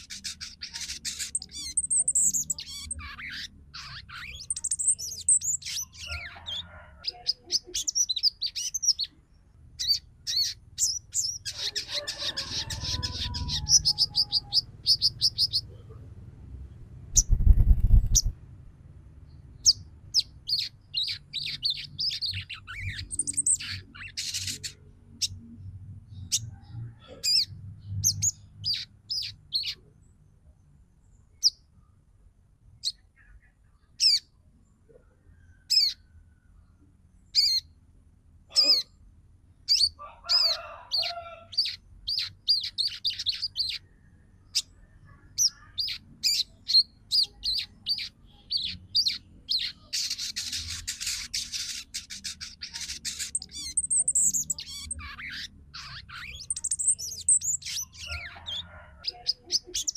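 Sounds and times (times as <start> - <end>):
bird chirping and trilling: 0.0 - 15.8, 17.1 - 18.4, 19.6 - 25.5, 26.1 - 29.9, 32.8 - 34.3, 35.6 - 36.1, 37.3 - 37.8, 39.6 - 43.9, 45.3 - 59.9.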